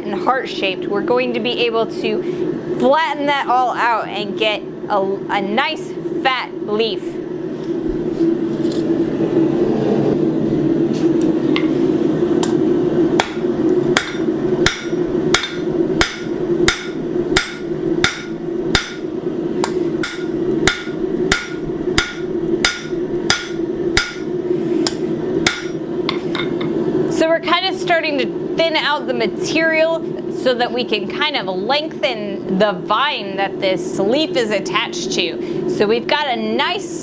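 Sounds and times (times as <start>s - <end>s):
steady low hum: 0.0s - 37.0s
hammer striking steel on anvil: 13.2s - 13.4s, 14.0s - 24.3s, 24.9s - 25.8s.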